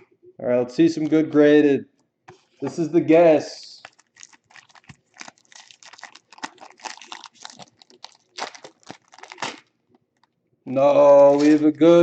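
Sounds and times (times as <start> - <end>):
card pack wrapper crinkling: 3.8 - 10.3, 11.1 - 11.7.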